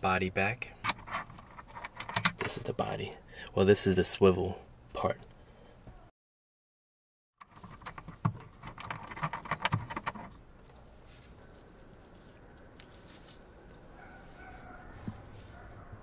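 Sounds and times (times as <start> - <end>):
small parts clicking and knocking: 7.4 - 10.4
faint handling noise: 7.4 - 16.0.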